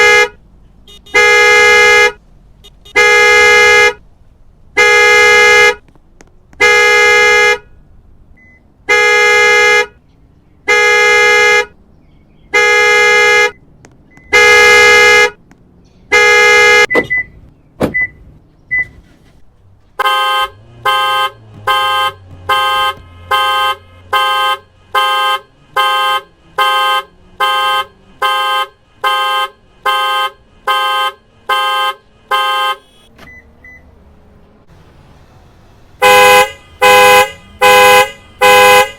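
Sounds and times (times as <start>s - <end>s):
car horn blasts: 0.0s - 4.0s, 4.8s - 5.8s, 6.6s - 7.8s, 8.8s - 10.0s, 10.6s - 11.8s, 12.5s - 13.6s, 14.2s - 15.4s, 16.1s - 17.3s, 20.0s - 33.2s, 35.9s - 38.9s.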